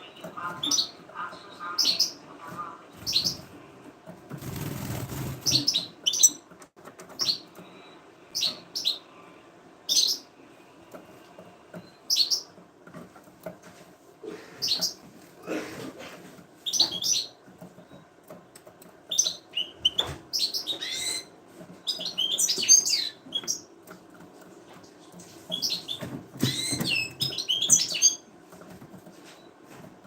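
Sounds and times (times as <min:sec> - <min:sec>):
birds chirping: 0:00.0 - 0:03.7, 0:04.5 - 0:12.6, 0:16.6 - 0:18.2, 0:19.0 - 0:23.9, 0:25.4 - 0:28.3
wings flapping: 0:04.2 - 0:05.9.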